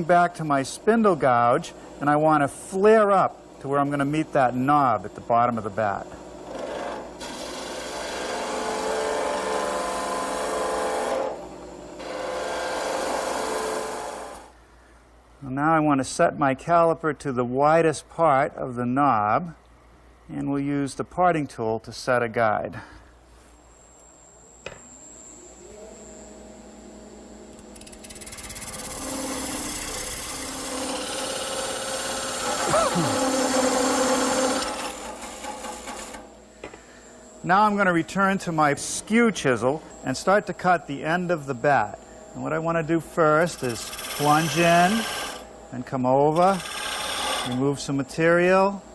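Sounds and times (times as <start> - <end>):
gouge cutting wood on a lathe: 6.5 - 11.4, 12.0 - 14.5, 27.8 - 36.3, 43.3 - 45.5, 46.2 - 47.7
tool scraping spinning wood: 27.6 - 36.3, 43.1 - 47.9.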